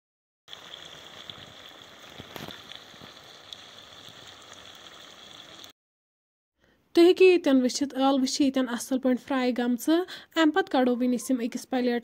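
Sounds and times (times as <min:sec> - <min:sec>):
chips sizzling in hot oil: 0:00.5 - 0:05.7
oil crackling and popping: 0:00.5 - 0:05.8.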